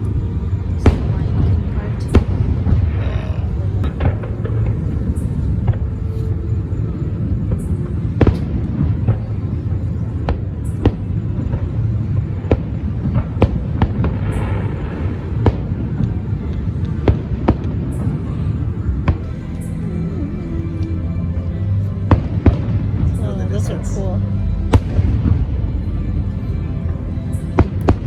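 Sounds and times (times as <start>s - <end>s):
fireworks crackling: 0.0s - 20.9s
low rumble: 0.0s - 28.0s.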